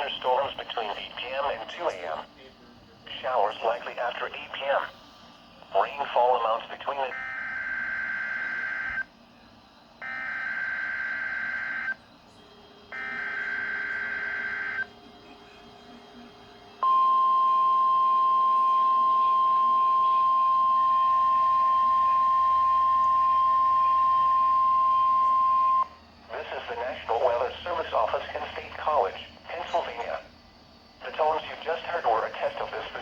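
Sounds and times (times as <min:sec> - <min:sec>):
loud single-pitch alert tone: 0:16.8 - 0:26.0.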